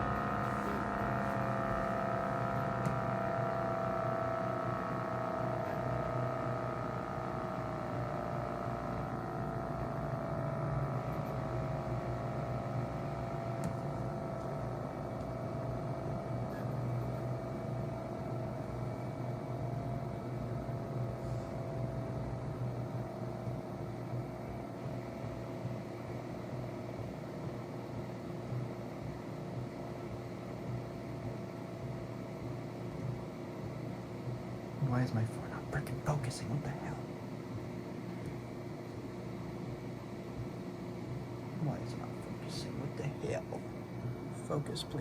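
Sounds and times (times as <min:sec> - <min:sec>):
low motor hum: 0:00.0 - 0:45.0.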